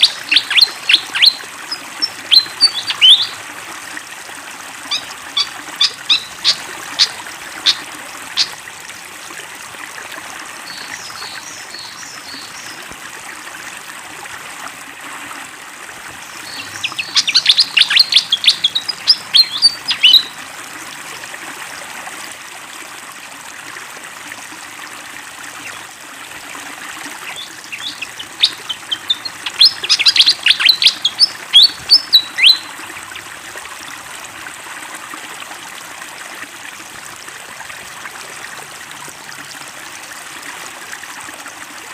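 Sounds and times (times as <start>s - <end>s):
bird chirping: 0.0s - 3.4s, 4.9s - 7.8s, 16.4s - 20.4s, 27.2s - 32.7s
flowing water hiss: 0.0s - 41.9s.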